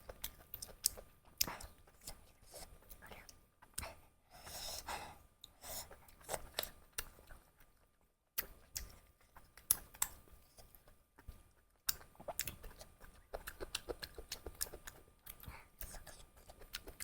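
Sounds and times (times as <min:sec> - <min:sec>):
wet chewing clicks and smacks: 0:00.0 - 0:03.9, 0:08.4 - 0:17.0.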